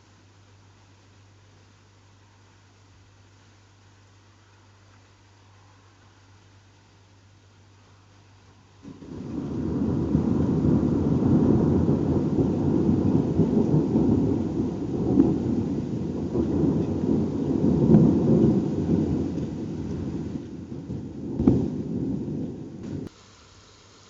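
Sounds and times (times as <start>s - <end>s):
rolling thunder: 8.8s - 23.1s
sharp thunder crack: 8.8s - 23.1s.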